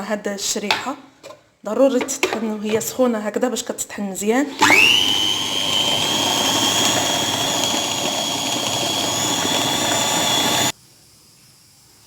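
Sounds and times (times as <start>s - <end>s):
food processor whining and grinding: 4.4s - 10.7s.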